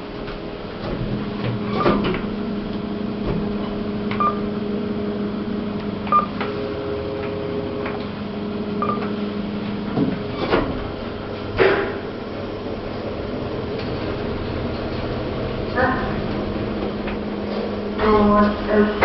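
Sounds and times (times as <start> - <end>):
lift drive humming: 0.0 - 19.0
short beeps: 4.2 - 4.4, 6.1 - 6.4, 8.8 - 9.1
lift car knocks: 8.8 - 12.1.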